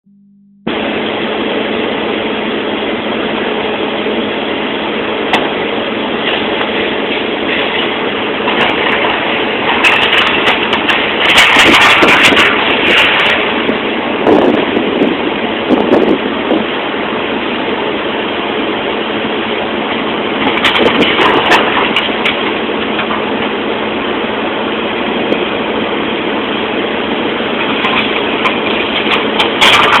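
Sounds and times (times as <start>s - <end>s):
heavy engine running: 0.0s - 30.0s
clatter: 6.2s - 14.6s, 20.4s - 23.5s, 27.6s - 30.0s.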